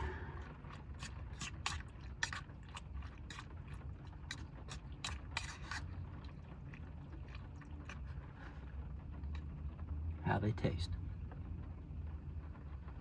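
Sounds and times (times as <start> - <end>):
steady low hum: 0.0 - 13.0
utensil scraping cookware: 5.0 - 5.9.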